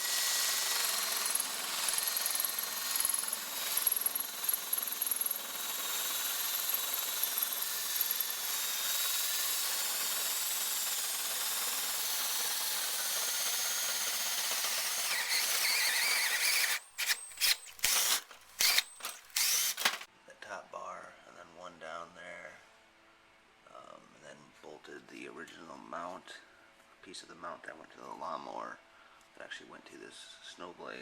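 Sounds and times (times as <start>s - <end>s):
power tool grinding steel: 0.0s - 20.1s.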